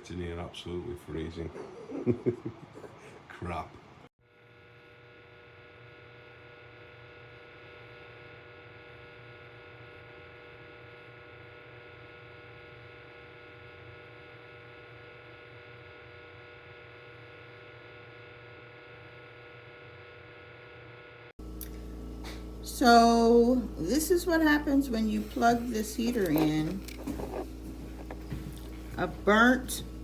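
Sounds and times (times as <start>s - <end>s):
fan heater humming: 0.0s - 4.1s, 21.4s - 30.0s.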